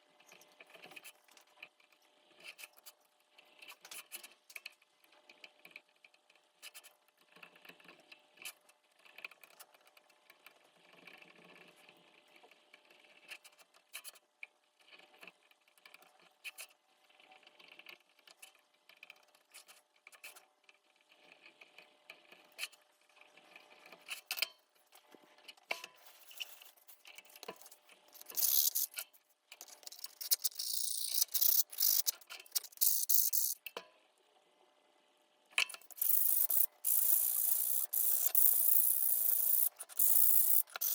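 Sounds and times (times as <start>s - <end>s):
clicks and scrapes on wood: 25.7s - 33.6s.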